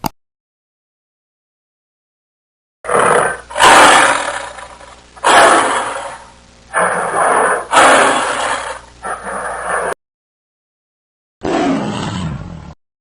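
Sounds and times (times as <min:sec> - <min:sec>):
tiger roaring: 0:02.9 - 0:10.0, 0:11.4 - 0:12.8.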